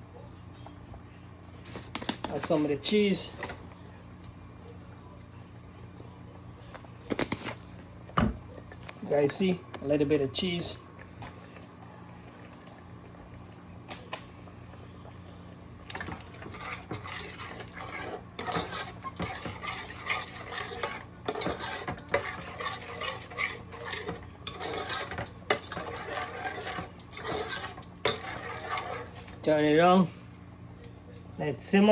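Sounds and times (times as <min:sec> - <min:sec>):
steady low hum: 0:00.0 - 0:31.9
utensil scraping and clinking in pan: 0:15.9 - 0:29.4.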